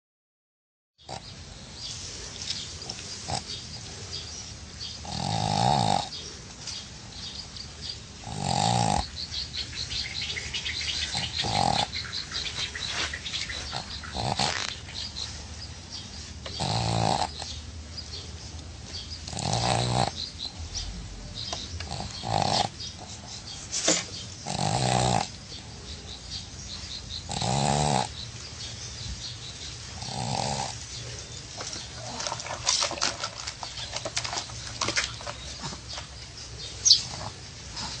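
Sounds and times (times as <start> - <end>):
dog snoring: 2.8 - 3.6, 5.0 - 6.3, 8.2 - 9.3, 11.0 - 12.9, 13.5 - 14.9, 16.5 - 17.6, 19.2 - 20.9, 21.8 - 23.4, 24.4 - 25.4, 27.3 - 28.2, 30.0 - 30.8.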